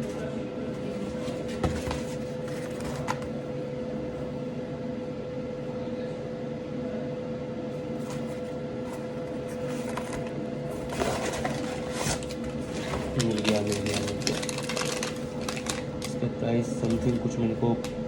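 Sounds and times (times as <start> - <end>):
steady background hum: 0.0 - 18.0
packaging rustling and clicks: 9.6 - 16.2.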